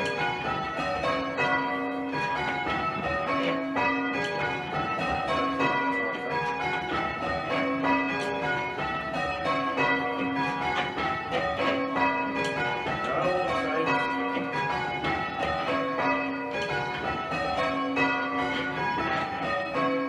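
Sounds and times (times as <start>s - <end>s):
church bells ringing changes: 0.0s - 20.0s.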